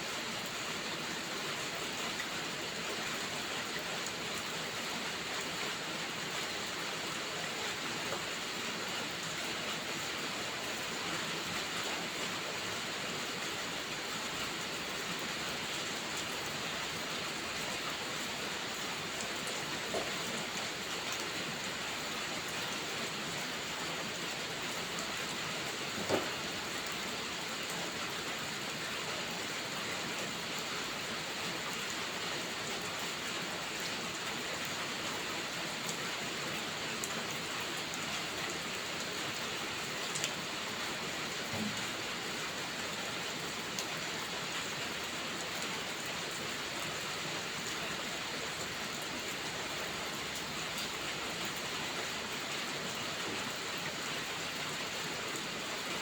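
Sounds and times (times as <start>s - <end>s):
rain pattering: 0.1s - 56.0s.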